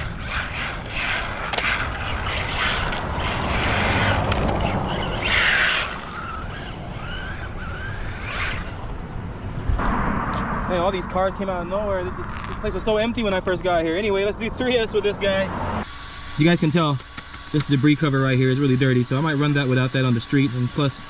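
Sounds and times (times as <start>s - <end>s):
tyres scrubbing across ground: 0.0s - 8.9s
electric motor whining: 0.0s - 9.4s, 14.6s - 21.0s.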